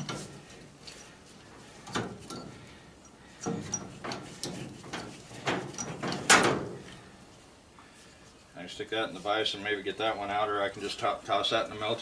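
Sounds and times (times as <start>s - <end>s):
metal clanks and knocks: 0.0s - 0.4s, 1.8s - 2.6s, 3.4s - 6.8s.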